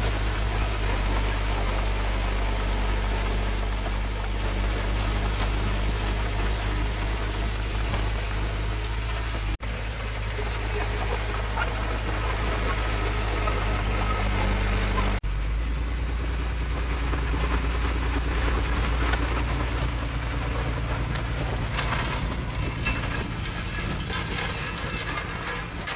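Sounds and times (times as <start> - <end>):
light metal clanks: 0.0 - 14.4, 20.6 - 25.9
diesel engine running: 0.0 - 25.9.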